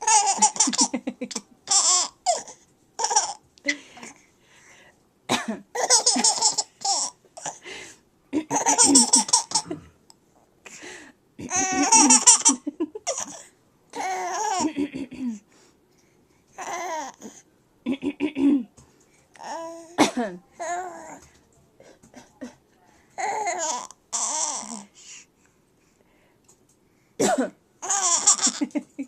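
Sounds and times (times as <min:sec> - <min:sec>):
baby giggling: 0:00.0 - 0:03.4, 0:05.8 - 0:07.6, 0:08.4 - 0:09.8, 0:11.4 - 0:13.4, 0:14.0 - 0:15.3, 0:27.8 - 0:29.0.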